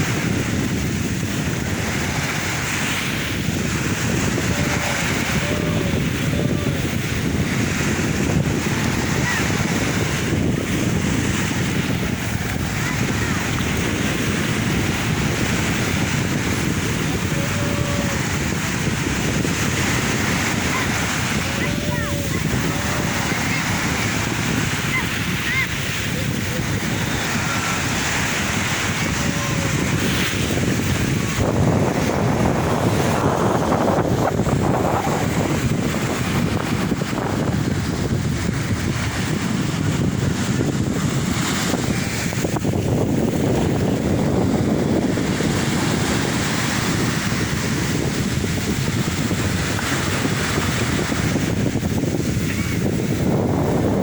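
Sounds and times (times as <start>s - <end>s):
sea waves breaking: 0.0s - 54.0s
wind rumbling on microphone: 0.0s - 54.0s.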